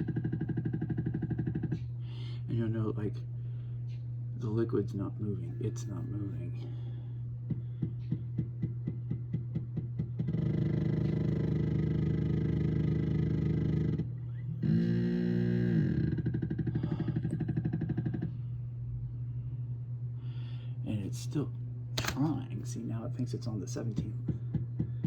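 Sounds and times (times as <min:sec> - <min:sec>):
stepper motor ticks and whine: 0:00.0 - 0:02.0, 0:07.4 - 0:18.3
constant low hum: 0:00.0 - 0:25.0.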